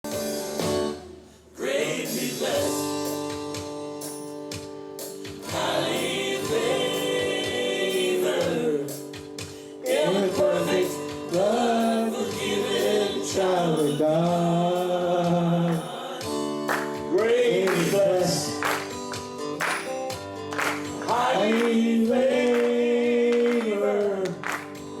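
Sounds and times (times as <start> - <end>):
men singing gospel song: 1.6 - 3.2, 5.4 - 9.1, 9.8 - 18.9, 21.0 - 24.7.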